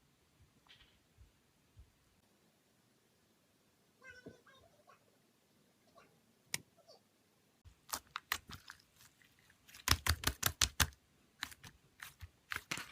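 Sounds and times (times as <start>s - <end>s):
slime squishing with crackly pops: 7.7s - 12.9s.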